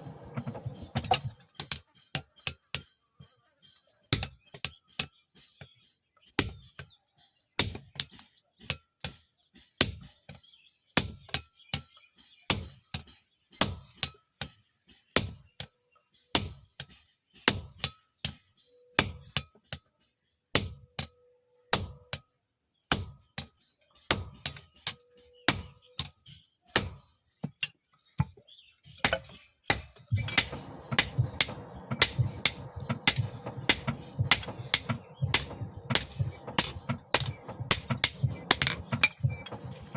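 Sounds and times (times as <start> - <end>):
machine humming: 0.0 - 1.2, 30.1 - 39.9
hammer on hot steel: 29.0 - 39.9.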